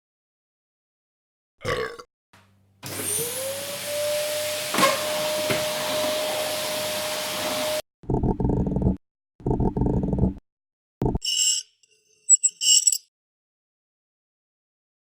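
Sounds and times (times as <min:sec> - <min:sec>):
vacuum motor whining: 0:02.8 - 0:07.8.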